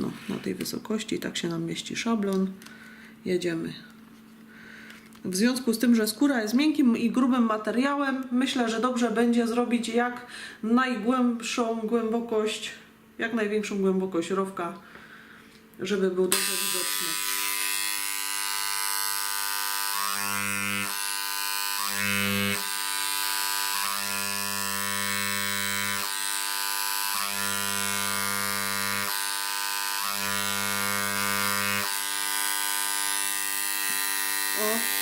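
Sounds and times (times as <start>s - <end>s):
electric engraver buzzing: 16.3s - 35.0s.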